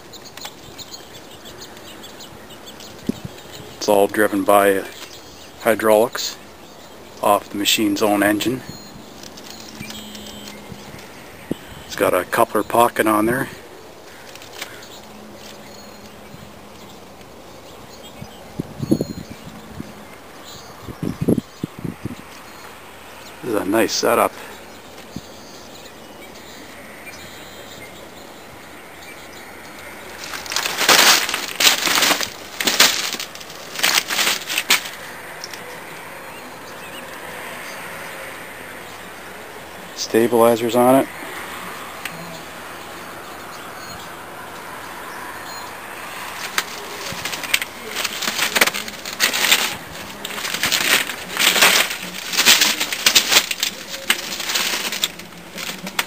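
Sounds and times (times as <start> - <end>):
faint outdoor background: 0.0 - 56.0
footsteps on gravel: 29.6 - 35.6, 46.1 - 56.0.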